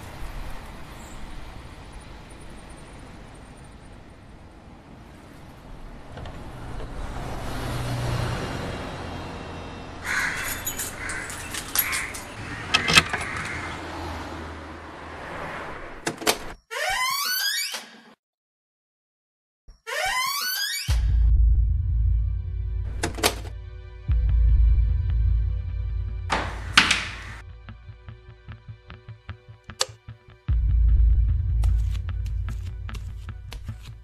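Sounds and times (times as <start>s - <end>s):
vehicle rumbling past: 0.0s - 16.1s
keys clattering: 10.2s - 12.4s
door opening with knocks and rattles: 10.2s - 13.7s, 23.0s - 23.5s, 26.3s - 27.4s
door lock clicking: 26.3s - 27.4s.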